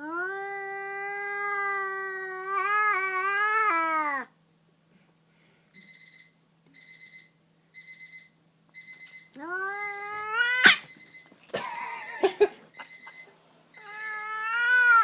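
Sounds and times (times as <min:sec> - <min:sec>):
cat yowling and hissing: 0:00.0 - 0:04.3, 0:09.4 - 0:11.0, 0:13.9 - 0:15.0.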